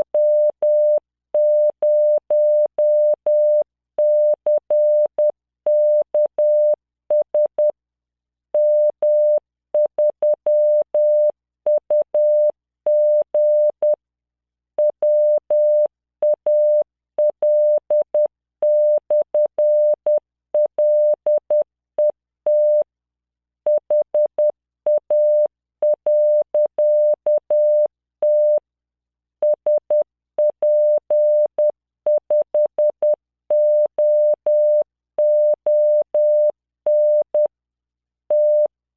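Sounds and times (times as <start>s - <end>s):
morse code beeps: 23.7s - 28.6s, 29.4s - 37.5s, 38.3s - 38.7s.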